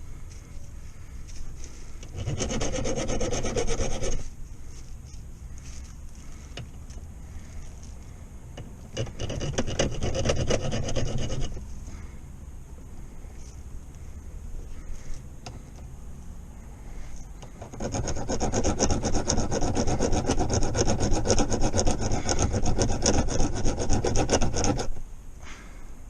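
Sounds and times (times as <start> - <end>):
hand file rasping: 2.0 - 4.3, 8.9 - 11.6, 17.4 - 25.0.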